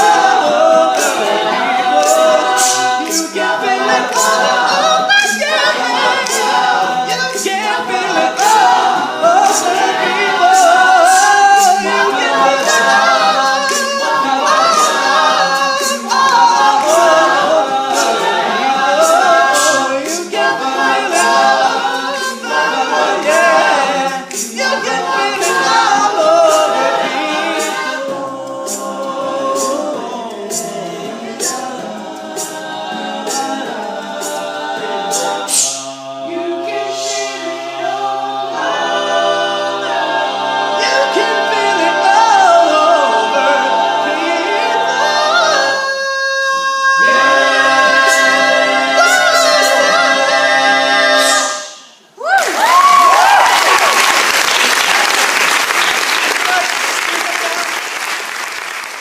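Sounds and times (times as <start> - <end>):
male a cappella singing: 0.0 - 51.8
vocal percussion clicks: 1.9 - 3.4, 24.3 - 24.8.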